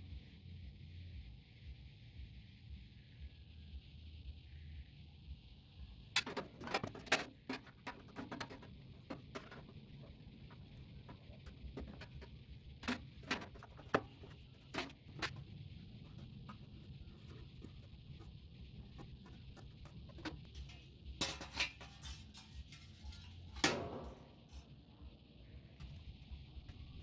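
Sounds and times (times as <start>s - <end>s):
faint steady hiss: 0.0s - 27.0s
metal parts and tools clicking: 6.2s - 15.4s, 19.9s - 24.7s.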